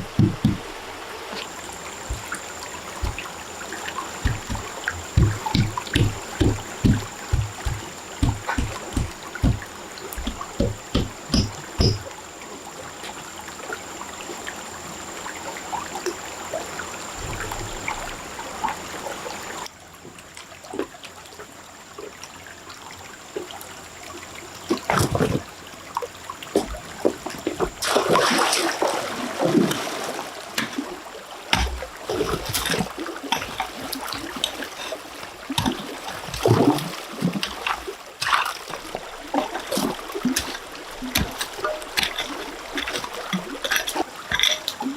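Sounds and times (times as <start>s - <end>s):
irregular knocks: 0.0s - 0.9s, 2.0s - 12.1s
water trickling and splashing: 0.0s - 44.9s.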